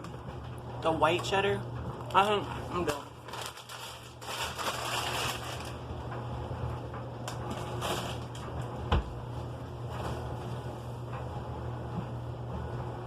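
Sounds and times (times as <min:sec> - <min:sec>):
steady low hum: 0:00.0 - 0:13.0
snack bag crinkling: 0:02.0 - 0:05.8.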